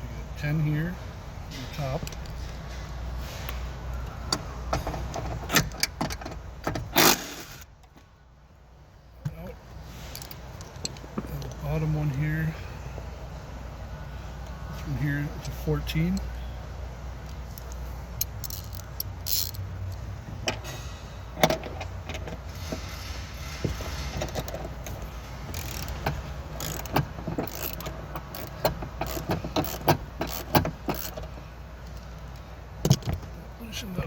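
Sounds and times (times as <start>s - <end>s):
steady low hum: 0.0s - 34.0s
ratchet clicks and metal knocks: 10.0s - 11.6s, 17.2s - 33.4s.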